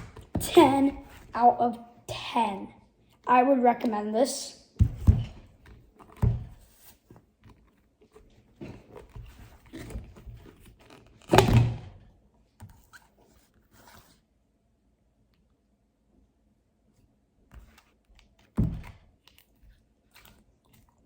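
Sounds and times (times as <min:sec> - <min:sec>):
plastic tubs thumping: 0:04.8 - 0:06.6.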